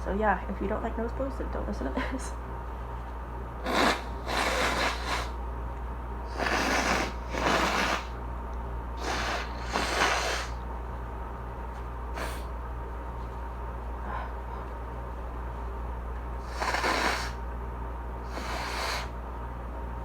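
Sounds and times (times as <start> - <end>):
person blowing nose: 3.6 - 5.4, 6.3 - 8.2, 9.0 - 10.6, 12.2 - 12.5, 16.4 - 17.4, 18.3 - 19.2.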